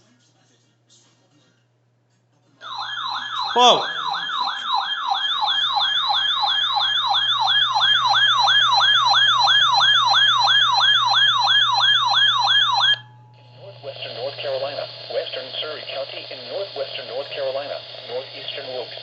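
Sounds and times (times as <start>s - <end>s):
yelping siren alert tone: 2.6s - 13.0s
low steady hum: 12.9s - 17.7s.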